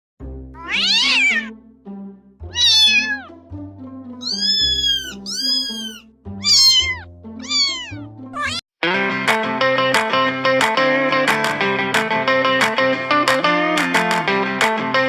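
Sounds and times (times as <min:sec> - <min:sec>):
background music with low melody: 0:00.2 - 0:15.0
cat meowing: 0:00.6 - 0:01.5, 0:02.5 - 0:03.4, 0:04.2 - 0:08.6.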